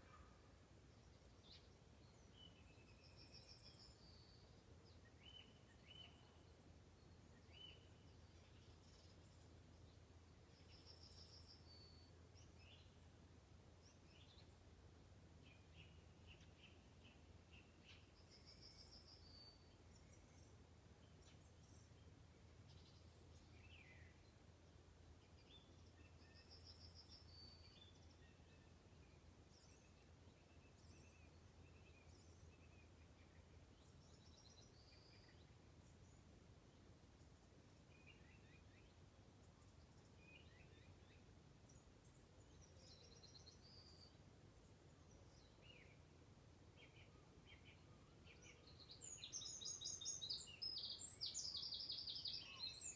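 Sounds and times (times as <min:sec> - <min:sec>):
birds chirping and trilling: 0:47.6 - 0:52.9.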